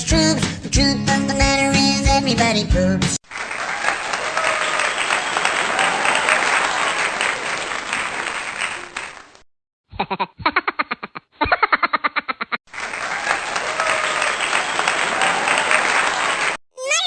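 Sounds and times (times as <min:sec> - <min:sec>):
crowd applause: 0:03.2 - 0:09.4, 0:12.7 - 0:17.0.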